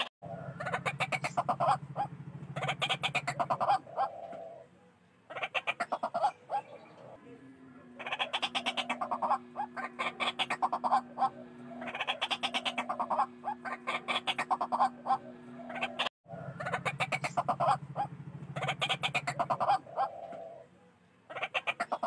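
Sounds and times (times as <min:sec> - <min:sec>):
waterhens calling harshly: 0:00.0 - 0:04.6, 0:05.3 - 0:07.2, 0:07.9 - 0:20.7, 0:21.3 - 0:22.0.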